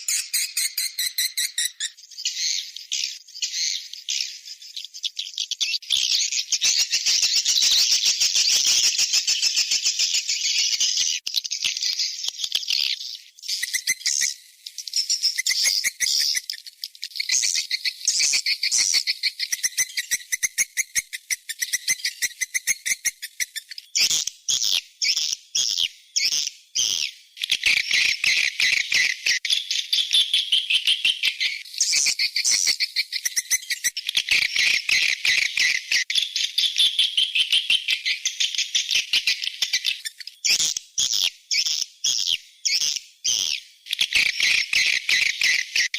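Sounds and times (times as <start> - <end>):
recorded swiftlet twittering: 0.0 - 2.1.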